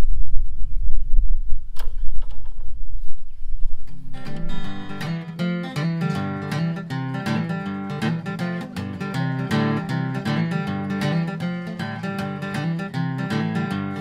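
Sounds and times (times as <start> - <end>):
acoustic guitar plucked and strummed: 3.8 - 14.0.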